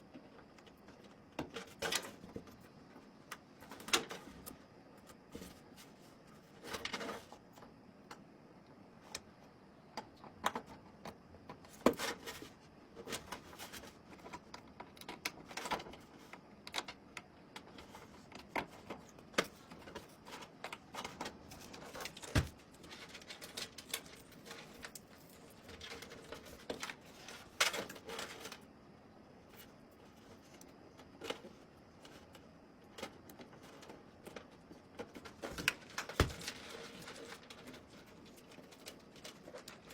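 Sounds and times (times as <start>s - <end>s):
computer parts clicking and knocking: 14.1s - 25.0s.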